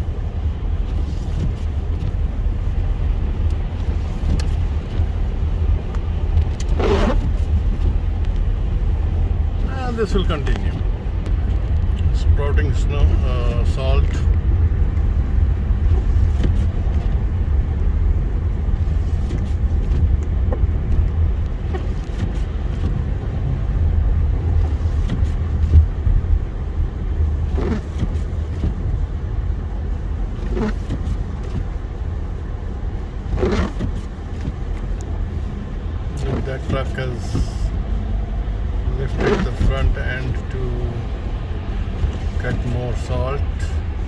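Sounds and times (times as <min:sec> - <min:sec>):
car road and engine rumble: 0:00.0 - 0:44.0.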